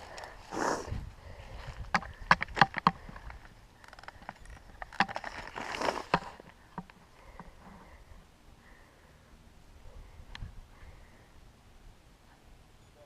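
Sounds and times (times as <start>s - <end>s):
rustling: 1.6s - 8.0s.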